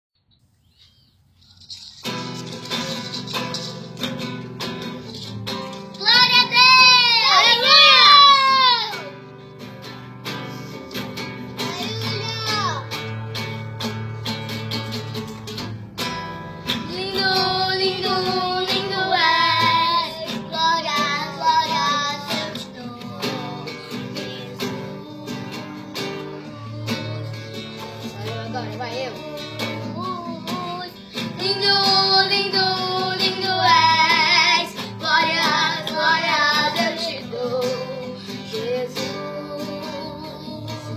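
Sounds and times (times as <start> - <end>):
plucked acoustic guitar: 1.6 - 40.9
child singing: 5.9 - 9.2, 11.6 - 13.0, 16.8 - 40.9.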